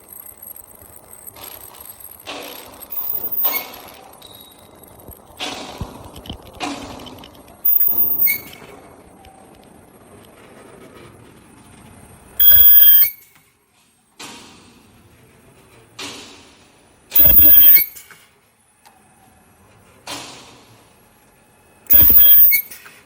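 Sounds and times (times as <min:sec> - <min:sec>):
machine hissing: 0:00.0 - 0:05.9, 0:16.5 - 0:18.2, 0:21.9 - 0:23.0
machine shrill burst: 0:02.9 - 0:04.6, 0:07.6 - 0:08.6, 0:12.4 - 0:13.4, 0:17.1 - 0:18.1, 0:21.9 - 0:22.8.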